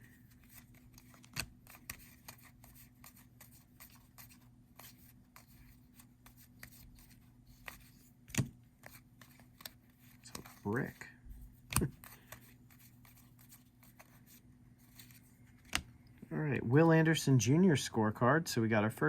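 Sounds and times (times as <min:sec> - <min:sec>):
faint steady hum: 0:00.0 - 0:19.0
cards being flicked through: 0:00.3 - 0:11.0, 0:11.6 - 0:15.9.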